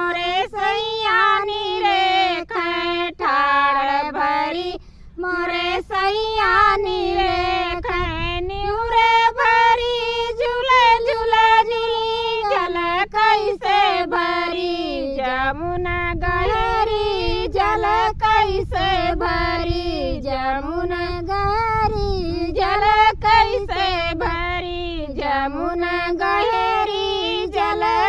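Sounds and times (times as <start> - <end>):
woman singing folk song: 0.0 - 28.0.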